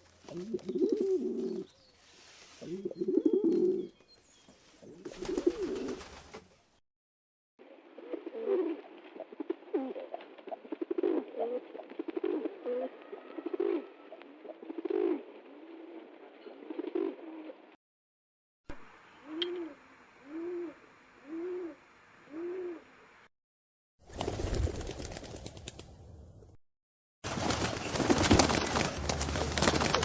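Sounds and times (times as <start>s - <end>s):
pigeons cooing: 0.3s - 1.7s, 2.6s - 3.9s, 4.8s - 6.0s, 7.9s - 17.7s, 19.2s - 23.0s.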